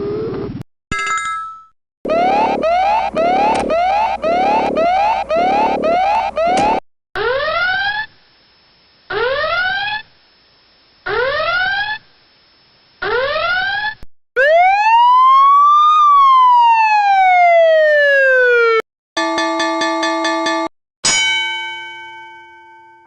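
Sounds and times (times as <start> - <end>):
electronic whoop alarm: 2.1 - 8.1
siren tone rising and falling: 2.1 - 8.1, 13.0 - 18.8.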